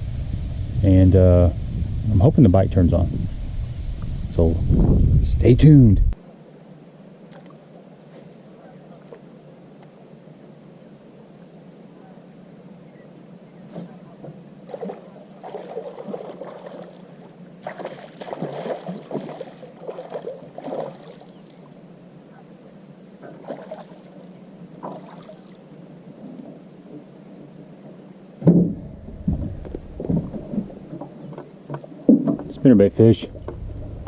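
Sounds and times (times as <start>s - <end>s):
steady low hum: 0.0s - 34.0s
splashing and rustling: 13.7s - 21.8s, 23.2s - 26.6s
heavy knocks and thumps: 28.4s - 30.7s.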